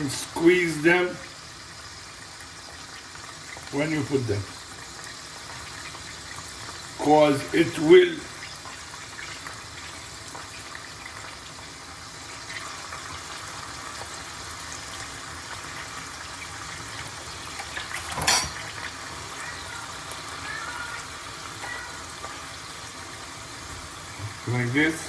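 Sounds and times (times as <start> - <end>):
food sizzling in oil: 0.0 - 25.0
utensil clanking on pan: 17.6 - 18.7.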